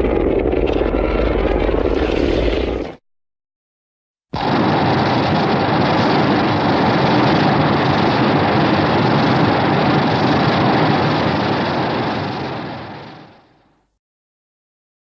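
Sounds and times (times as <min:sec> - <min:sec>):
harsh rushing noise: 0:04.4 - 0:13.5.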